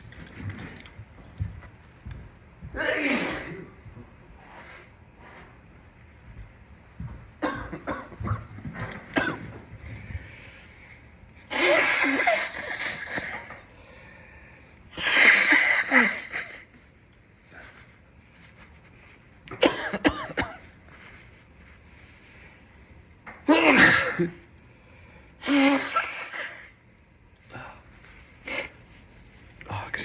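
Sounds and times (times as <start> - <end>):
man coughing: 2.8 - 3.8, 7.4 - 8.5, 9.1 - 9.6, 19.5 - 20.7, 23.5 - 24.4.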